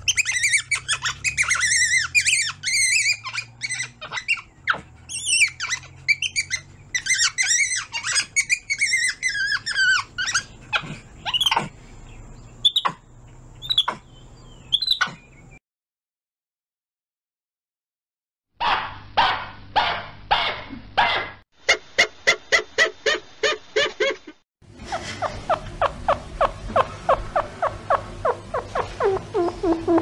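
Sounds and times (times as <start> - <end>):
animal squeaking chirps: 0.0 - 11.8, 12.6 - 13.0, 13.6 - 15.3, 24.9 - 30.0.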